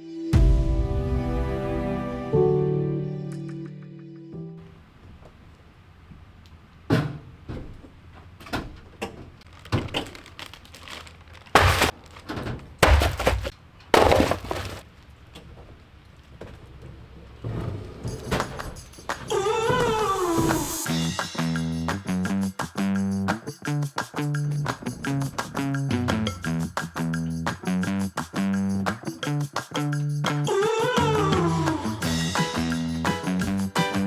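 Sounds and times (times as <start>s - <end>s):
hard objects knocking and clattering: 9.5s - 14.8s.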